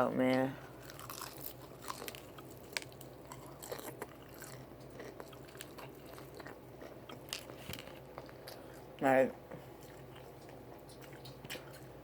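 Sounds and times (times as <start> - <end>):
chewing fried chicken: 0.2 - 12.0.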